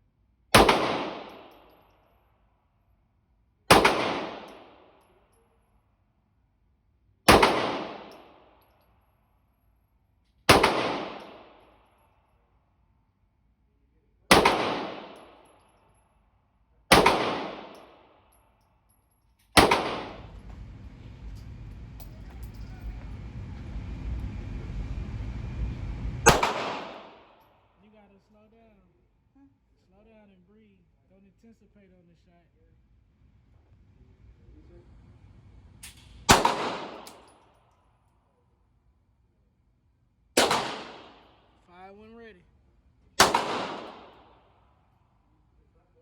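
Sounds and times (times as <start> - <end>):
handgun shots: 0.6 - 1.4, 3.7 - 4.6, 7.3 - 8.2, 10.5 - 11.4, 14.3 - 15.3, 16.9 - 17.9, 19.6 - 20.2, 26.3 - 27.1, 40.4 - 41.2, 43.2 - 44.2
low rumbling noise: 19.6 - 27.8, 33.0 - 37.1.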